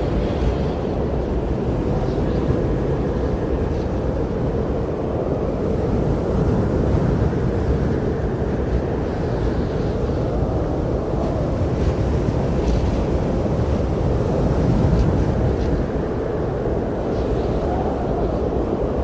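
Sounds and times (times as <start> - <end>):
snowstorm wind blowing: 0.0 - 19.0.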